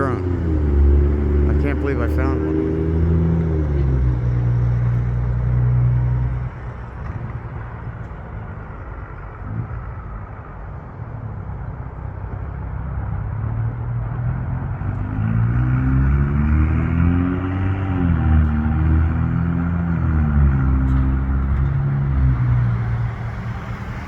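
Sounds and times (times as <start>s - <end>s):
engine rising in pitch: 0.0s - 6.6s, 13.6s - 24.0s
engine low hum: 0.0s - 24.0s.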